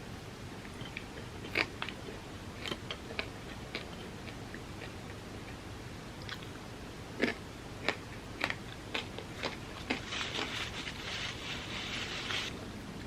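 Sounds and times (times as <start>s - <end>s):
crunchy chewing: 7.2s - 12.5s
steady hiss: 9.6s - 12.5s.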